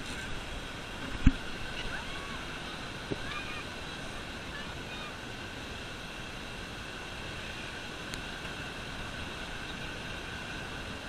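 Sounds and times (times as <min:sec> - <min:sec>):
ocean surf: 0:00.0 - 0:11.0.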